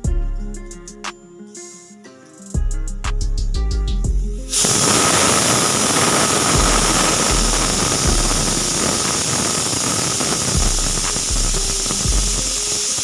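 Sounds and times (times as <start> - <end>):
pressure cooker whistle hissing: 4.5 - 13.0.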